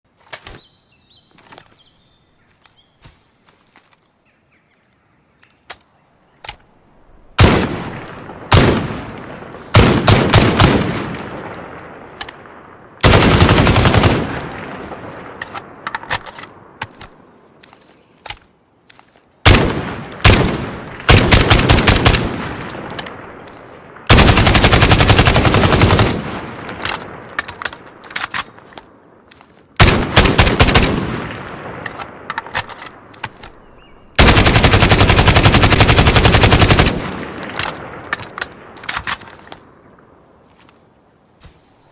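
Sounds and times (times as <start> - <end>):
gunfire shots and bursts: 7.4 - 12.4, 13.0 - 17.2, 19.4 - 28.9, 29.8 - 33.6, 34.2 - 39.7.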